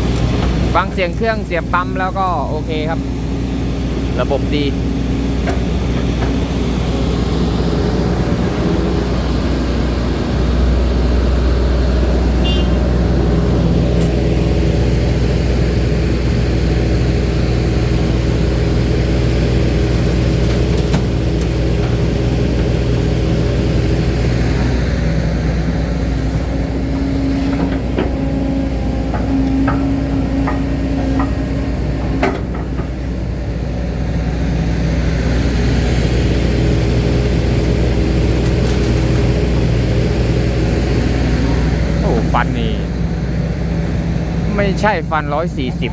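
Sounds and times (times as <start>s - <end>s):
excavator diesel engine running: 0.0s - 45.9s
metal knocks and clanks: 20.0s - 24.3s, 27.4s - 33.4s.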